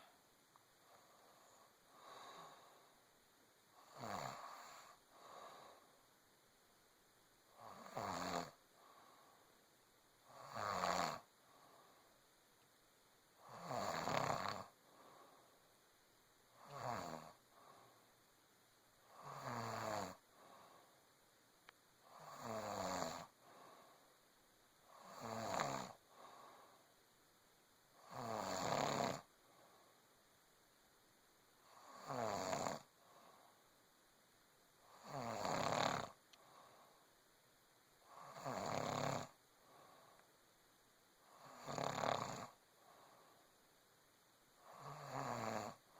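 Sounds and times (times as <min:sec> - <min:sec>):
woman snoring: 0:03.8 - 0:05.8, 0:07.6 - 0:08.6, 0:10.3 - 0:11.3, 0:13.4 - 0:14.8, 0:16.6 - 0:17.4, 0:19.0 - 0:20.2, 0:22.0 - 0:23.4, 0:24.9 - 0:26.5, 0:28.0 - 0:29.3, 0:31.6 - 0:32.9, 0:34.8 - 0:36.2, 0:38.0 - 0:39.4, 0:41.2 - 0:42.6, 0:44.6 - 0:45.9.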